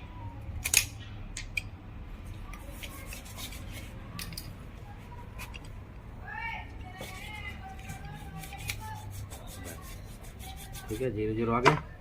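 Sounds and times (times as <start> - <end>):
metallic clicks of tools: 0.6 - 1.7
light scrapes of tools: 2.6 - 4.6.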